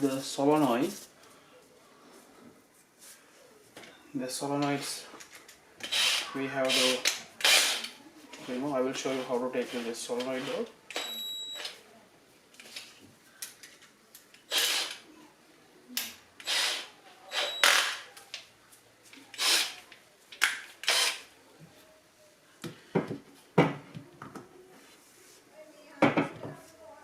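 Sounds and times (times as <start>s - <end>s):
tool scraping and clicking on metal: 5.2s - 11.8s.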